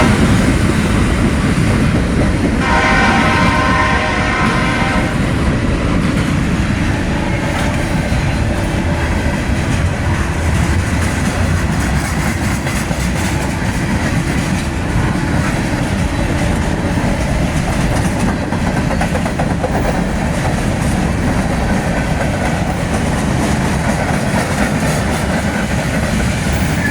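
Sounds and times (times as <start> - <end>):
train wheels rumbling on rail: 0.0 - 26.9
wheels clicking over rail joints: 5.3 - 26.9.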